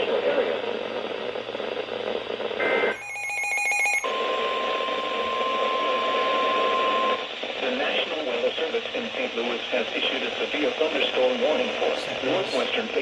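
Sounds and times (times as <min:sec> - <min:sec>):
radio hiss: 0:00.0 - 0:03.0, 0:04.0 - 0:13.0
steady single-pitch alarm tone: 0:02.7 - 0:07.2.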